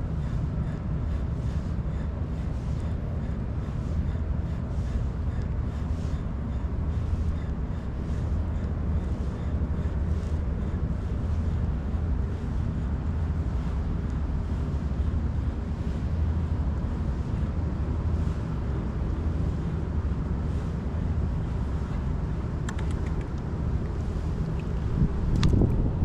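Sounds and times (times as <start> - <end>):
wind rumble on microphone: 0.0 - 26.0
faint clicks: 22.6 - 23.4.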